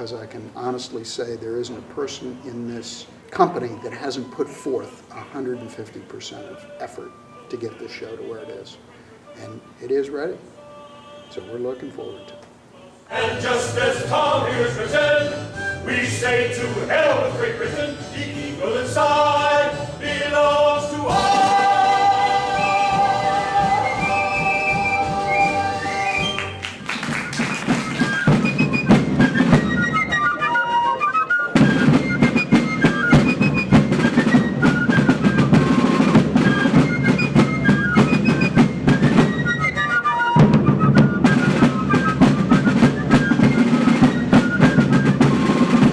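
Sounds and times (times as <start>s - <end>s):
woodwind march melody: 3.5s - 6.0s, 13.1s - 45.9s
choir holding a chord: 12.7s - 26.6s
snare and bass drums: 20.7s - 30.3s, 31.6s - 45.9s.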